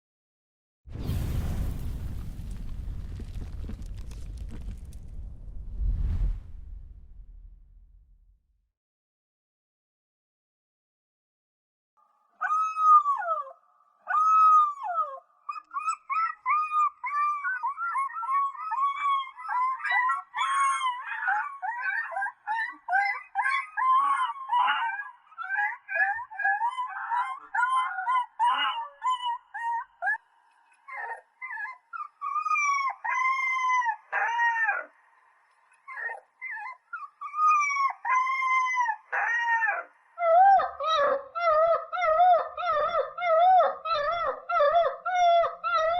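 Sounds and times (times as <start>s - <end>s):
puppies howling: 14.1s - 30.2s, 35.9s - 45.9s.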